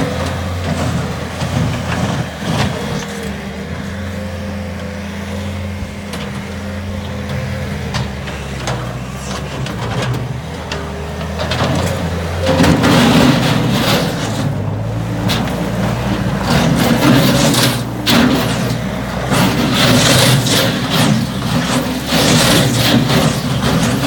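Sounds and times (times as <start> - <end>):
diesel engine running: 0.0 - 24.0
knocks and clanks: 7.2 - 24.0.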